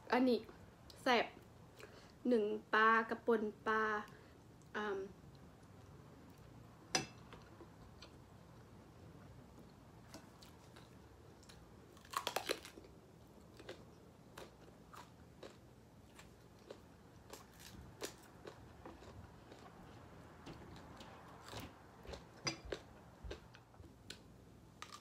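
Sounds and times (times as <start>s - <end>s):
person chewing food: 9.6s - 25.0s
food crunching: 10.1s - 24.2s, 24.8s - 25.0s.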